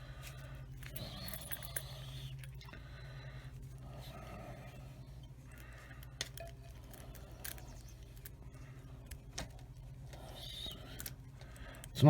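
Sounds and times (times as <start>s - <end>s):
steady low hum: 0.0s - 12.0s
lock picks clicking and scraping: 0.3s - 2.6s, 6.0s - 12.0s.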